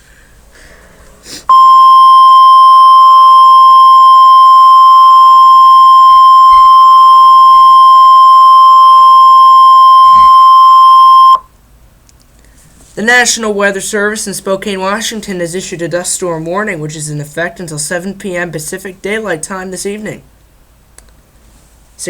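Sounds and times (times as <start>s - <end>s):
high-pitched alarm tone: 1.5s - 11.4s.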